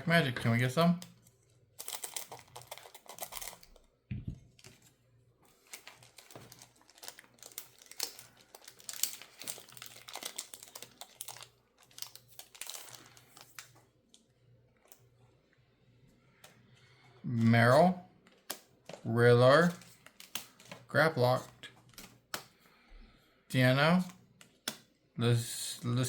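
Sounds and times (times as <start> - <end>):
foil wrapper crinkling and tearing: 0.6 - 3.9, 4.5 - 14.2, 19.6 - 20.9
low thump: 4.1 - 4.4.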